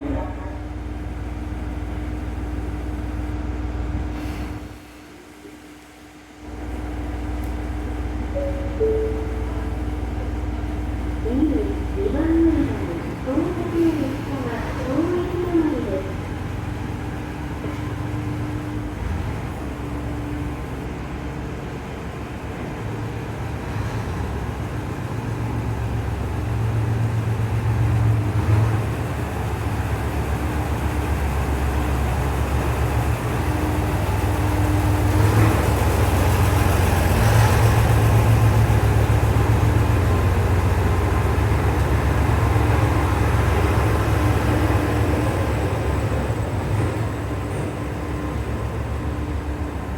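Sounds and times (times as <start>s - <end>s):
diesel railcar engine rumbling: 0.0s - 49.9s.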